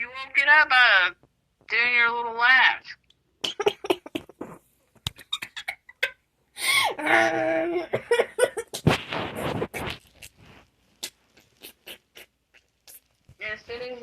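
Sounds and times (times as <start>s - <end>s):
person giggling: 3.4s - 8.9s.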